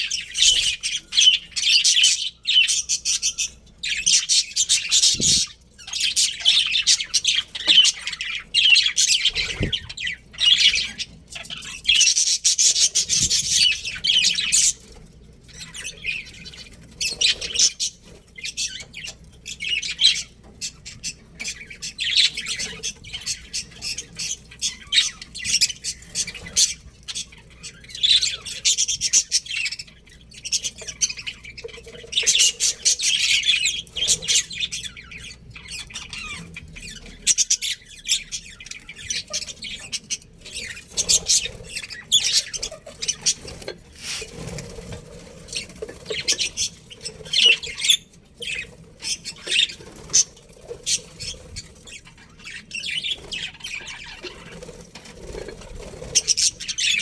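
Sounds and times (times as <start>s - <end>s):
budgerigars chirping and chattering: 0.0s - 57.0s.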